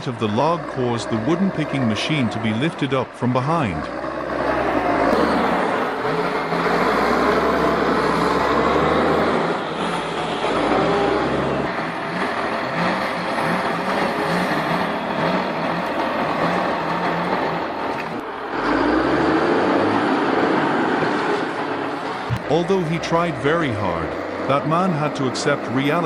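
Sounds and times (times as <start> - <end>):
machine engine running hard: 0.0 - 26.0.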